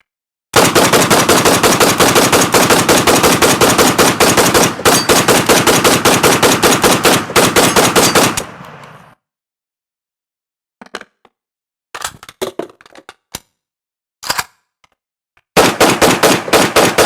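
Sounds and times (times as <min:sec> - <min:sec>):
rifle firing automatic: 0:00.6 - 0:09.1, 0:15.6 - 0:17.0.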